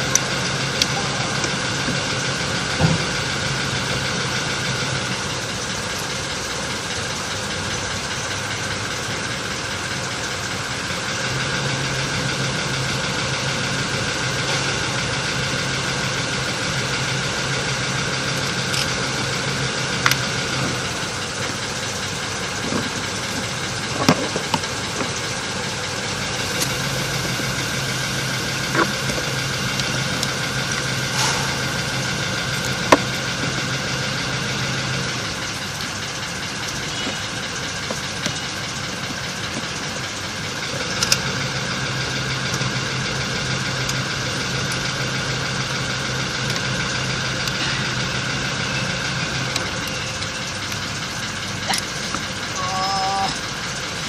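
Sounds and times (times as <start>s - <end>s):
engine-like running hum: 0.0s - 54.0s
low drone: 11.0s - 37.4s.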